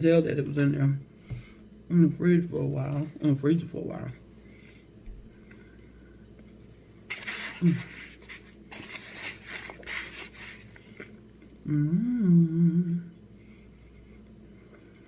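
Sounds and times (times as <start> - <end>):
crunchy food chewing: 7.1 - 11.6
person humming mmm: 11.6 - 13.2.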